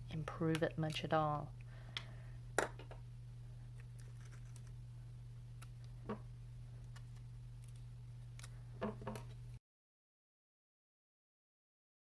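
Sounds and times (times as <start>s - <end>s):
steady low hum: 0.0s - 9.6s.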